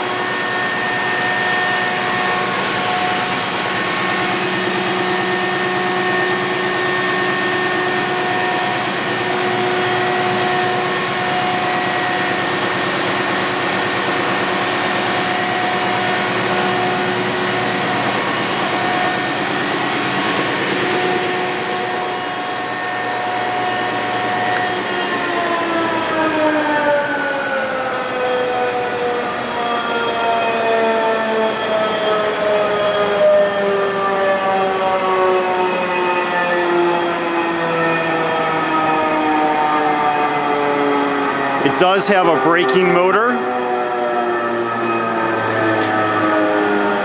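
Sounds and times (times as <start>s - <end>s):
belt sander running: 0.0s - 22.1s
machine whine: 0.0s - 47.0s.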